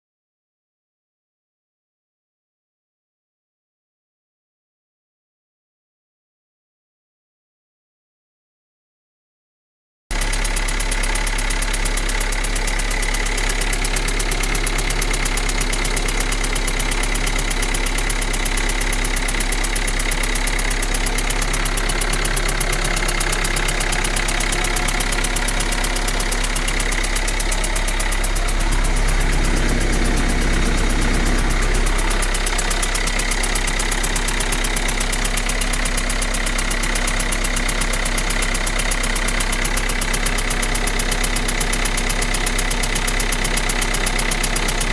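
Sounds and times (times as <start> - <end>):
diesel engine idling with clatter: 10.1 - 44.9.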